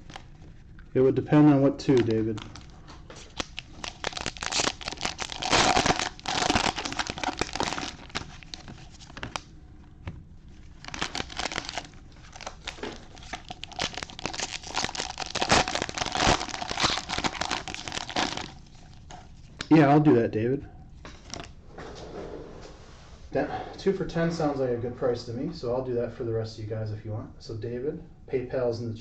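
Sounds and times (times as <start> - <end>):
wrappers tearing and crinkling: 1.8 - 9.5, 10.6 - 19.5.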